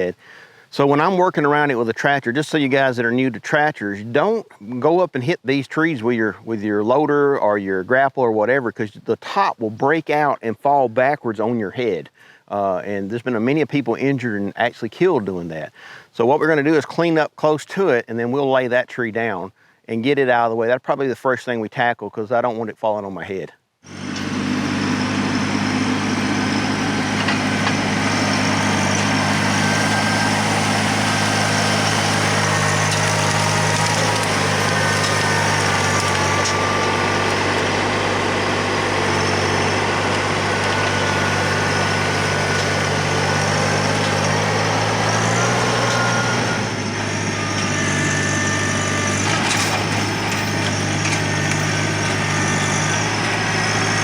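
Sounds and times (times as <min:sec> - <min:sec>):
tractor diesel engine running: 0:23.9 - 0:54.0.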